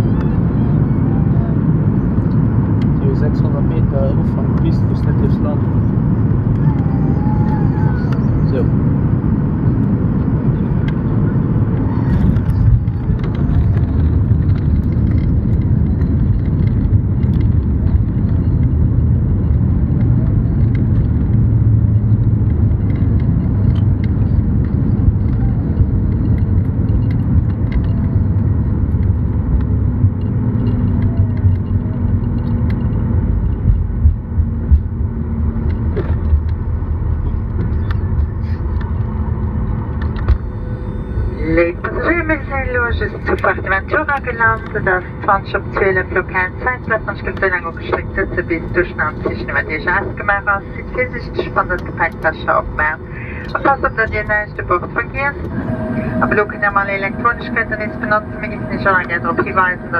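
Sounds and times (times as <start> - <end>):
jet engines rumbling: 0.0 - 59.9
wheels rolling on tarmac: 9.7 - 41.0.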